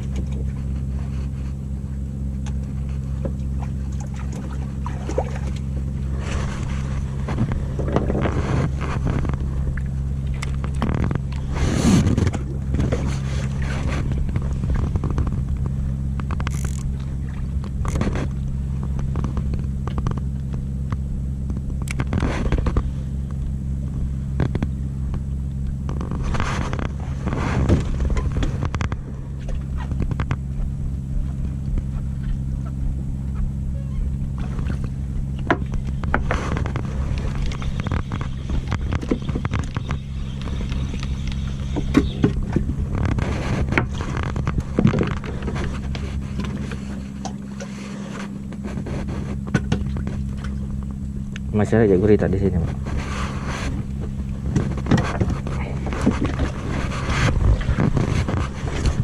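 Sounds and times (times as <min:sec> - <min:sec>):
boat engine running: 0:00.0 - 0:59.0
splashing: 0:03.4 - 0:15.1
rustling: 0:25.8 - 0:30.4, 0:52.6 - 0:59.0.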